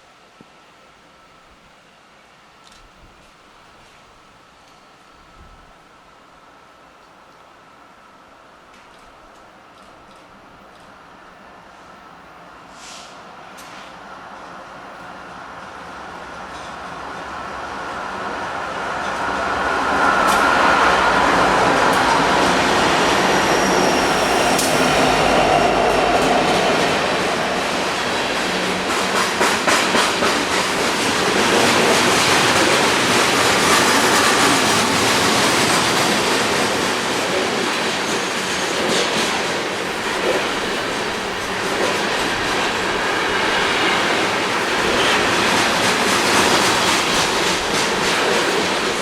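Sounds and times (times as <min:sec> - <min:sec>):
train wheels clattering on rails: 0:16.1 - 0:49.0.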